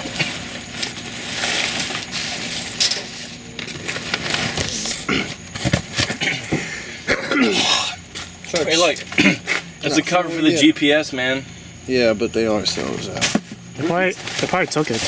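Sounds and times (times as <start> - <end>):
trash bags and boxes crunching: 0.0 - 6.4, 13.2 - 15.0
objects clattering together: 0.0 - 6.7, 13.2 - 15.0.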